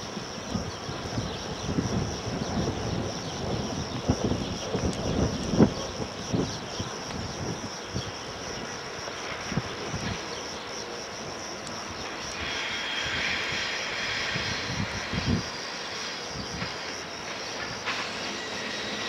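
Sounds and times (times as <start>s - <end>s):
train rushing rumble: 0.0s - 19.0s.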